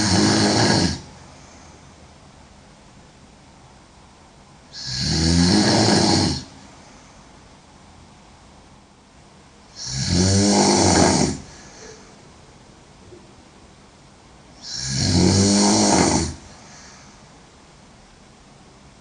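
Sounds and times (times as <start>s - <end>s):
woman snoring loudly: 0.0s - 1.2s, 4.7s - 6.6s, 9.7s - 11.7s, 14.6s - 16.6s.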